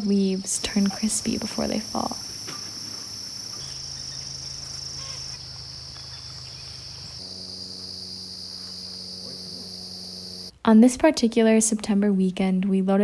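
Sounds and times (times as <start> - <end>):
crickets trilling: 0.0 - 10.5
low sustained drone: 2.8 - 10.5.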